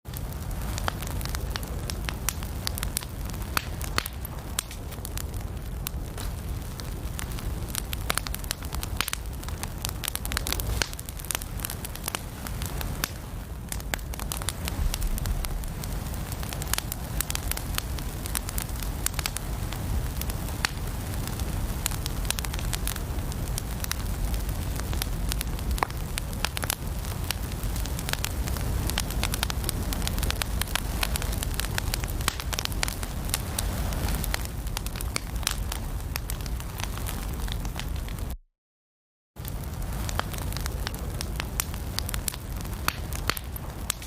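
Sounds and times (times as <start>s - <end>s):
fire crackling and popping: 0.0s - 38.4s, 39.4s - 44.0s
low rumble of flames: 0.0s - 38.4s, 39.4s - 44.0s.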